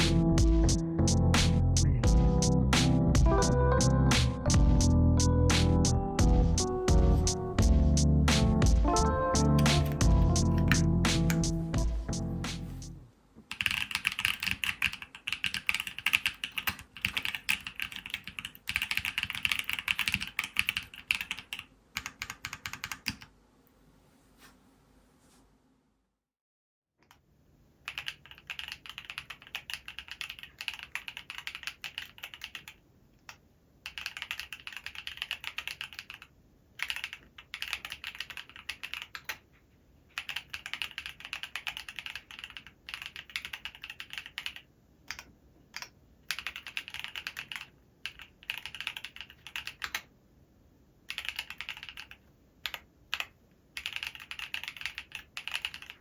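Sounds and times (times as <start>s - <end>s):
mechanical keyboard typing: 13.5s - 23.3s, 27.8s - 39.4s, 40.2s - 50.1s, 51.1s - 56.0s.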